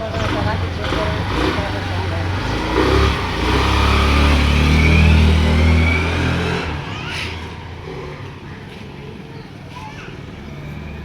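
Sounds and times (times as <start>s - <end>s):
scooter engine accelerating: 0.0s - 9.6s.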